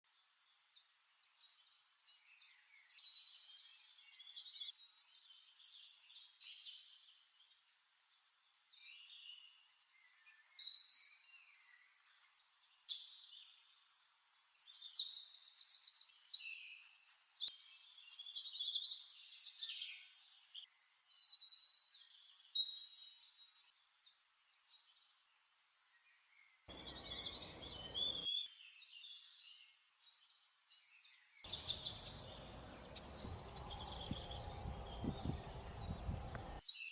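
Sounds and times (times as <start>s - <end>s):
songbirds chirping and singing: 0.1s - 25.2s, 25.9s - 36.9s.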